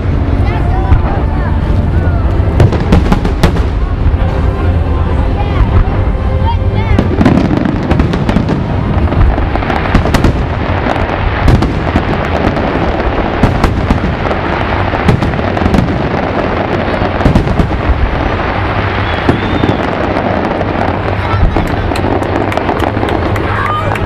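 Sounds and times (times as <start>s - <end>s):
fireworks booming and banging: 0.0s - 24.0s
fireworks crackling: 0.0s - 24.0s.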